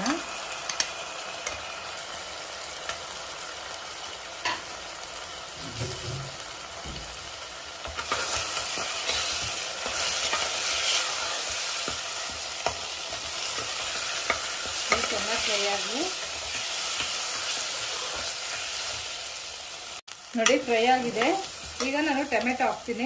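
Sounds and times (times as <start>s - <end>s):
onions sizzling in hot oil: 0.0s - 23.0s
spoon stirring in pan: 7.8s - 19.2s.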